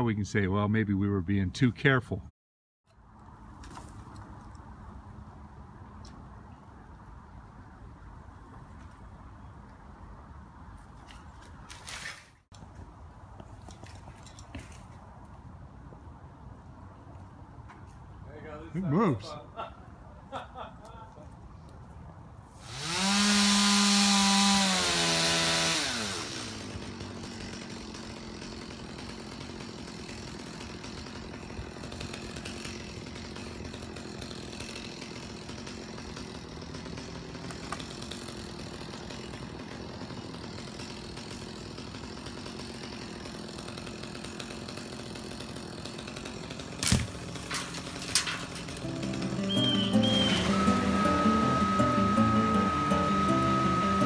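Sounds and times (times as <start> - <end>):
chainsaw revving: 22.6 - 54.0.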